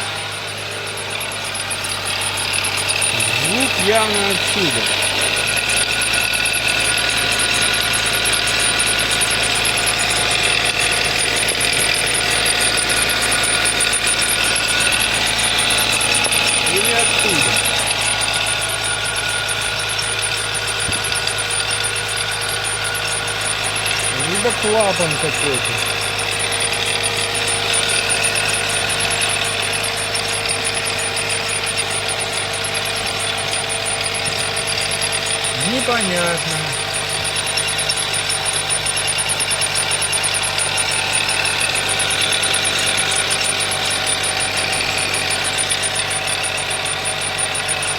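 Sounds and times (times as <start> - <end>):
car engine idling: 0.0 - 47.9
high pulsing whistle: 0.0 - 47.9.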